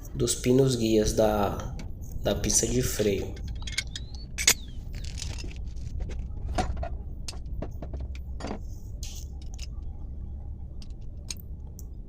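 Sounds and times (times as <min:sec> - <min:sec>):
steady low rumble: 0:00.0 - 0:12.0
metal tools clicking and knocking: 0:03.3 - 0:08.6.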